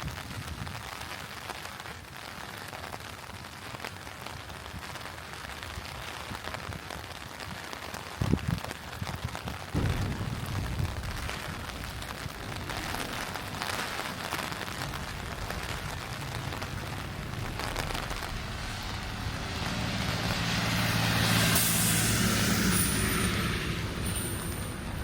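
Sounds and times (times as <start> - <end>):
steady rain hiss: 0.0 - 25.0
vehicle engine humming: 9.8 - 25.0
short burst of hiss: 21.4 - 23.6.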